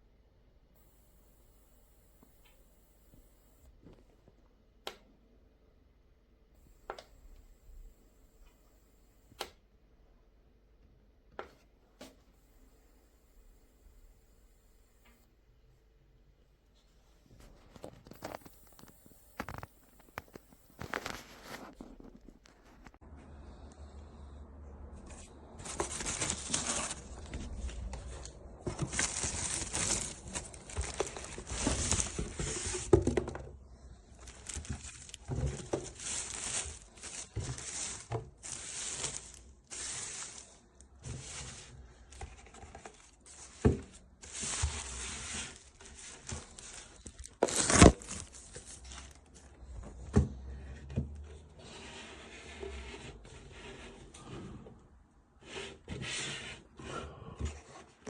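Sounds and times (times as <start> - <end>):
packaging tearing and crinkling: 17.8 - 23.0, 25.6 - 27.6, 28.8 - 32.9, 34.2 - 40.5, 45.5 - 49.2.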